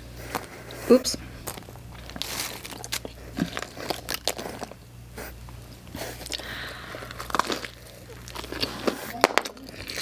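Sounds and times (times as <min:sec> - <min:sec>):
chewing crunchy food: 0:00.0 - 0:10.0.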